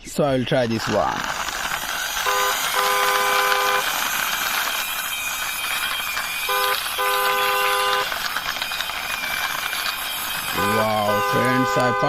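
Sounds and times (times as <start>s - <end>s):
faint high whine: 0.0s - 12.0s
steady hiss: 0.0s - 12.0s
two-note car horn honking: 6.5s - 8.1s, 10.6s - 12.0s.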